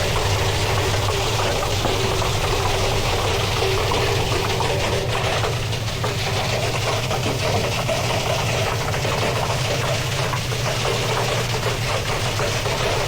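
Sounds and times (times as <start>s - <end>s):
washing machine motor hum: 0.0s - 13.0s.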